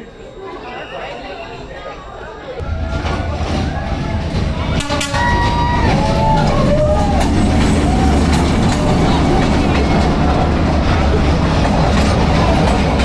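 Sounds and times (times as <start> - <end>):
train rumbling past: 2.6 - 13.0
wheels clattering on rails: 2.6 - 13.0.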